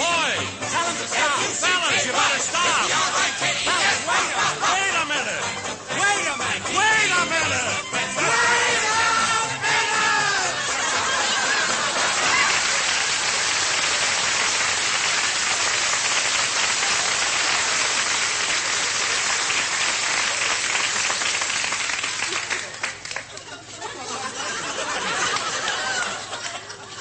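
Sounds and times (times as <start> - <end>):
vocal quartet singing: 0.6 - 10.7
studio audience applauding: 8.6 - 23.5.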